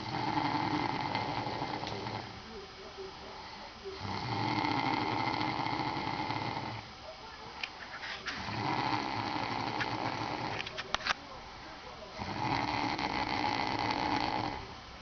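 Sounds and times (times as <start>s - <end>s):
man snoring: 0.0s - 2.3s, 4.0s - 6.8s, 8.4s - 10.6s, 12.2s - 14.7s.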